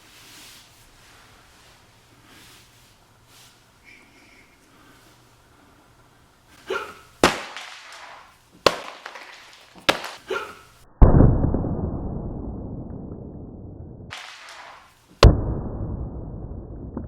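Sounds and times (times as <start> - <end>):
explosive bangs: 7.2 - 10.3, 11.0 - 17.0
big blast with rumble: 11.0 - 14.3, 15.2 - 17.0.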